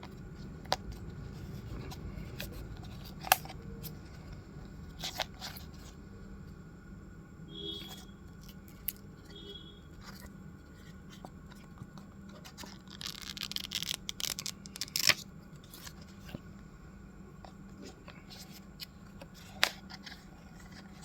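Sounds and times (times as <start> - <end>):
steady low hum: 0.0 - 21.0
packaging rustling and crinkling: 12.4 - 16.4.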